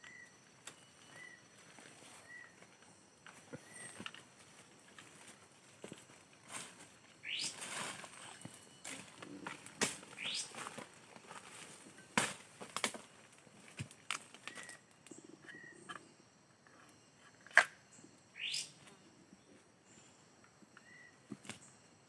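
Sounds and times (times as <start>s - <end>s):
faint steady high tones: 0.0s - 22.0s
bird chirps and calls: 7.2s - 7.6s, 10.1s - 10.6s, 18.4s - 18.8s.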